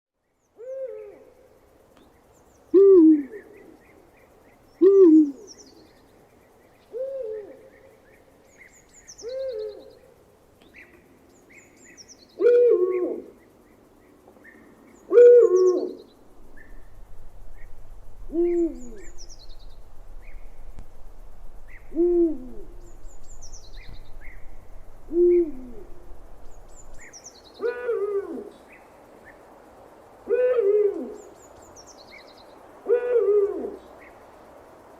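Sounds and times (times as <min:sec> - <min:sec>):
owl hooting: 0:00.6 - 0:01.4, 0:02.7 - 0:03.9, 0:04.8 - 0:05.8, 0:06.8 - 0:08.0, 0:09.1 - 0:10.1, 0:12.4 - 0:13.4, 0:15.0 - 0:16.8, 0:18.3 - 0:19.5, 0:21.7 - 0:24.4, 0:25.0 - 0:26.1, 0:26.9 - 0:28.6, 0:30.2 - 0:31.4, 0:32.8 - 0:34.2.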